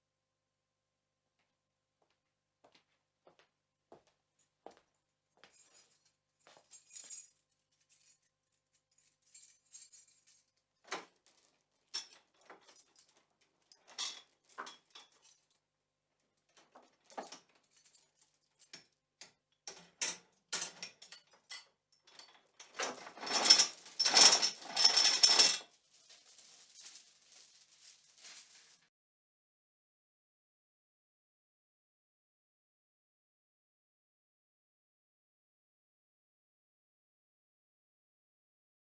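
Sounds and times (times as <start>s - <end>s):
chain links rattling: 5.5s - 8.2s, 8.9s - 10.4s, 19.7s - 25.7s, 26.3s - 28.8s.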